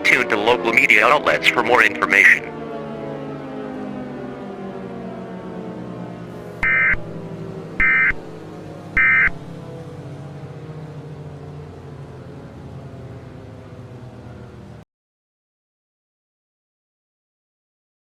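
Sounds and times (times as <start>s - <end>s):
low droning music: 2.5s - 13.4s.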